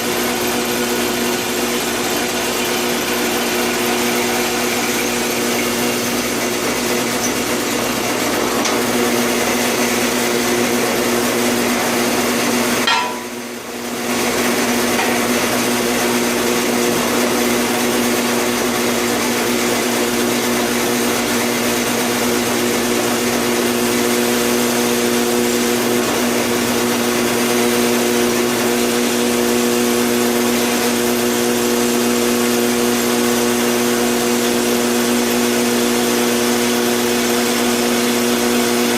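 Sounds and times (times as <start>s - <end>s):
electric machine motor hum: 0.0s - 20.0s.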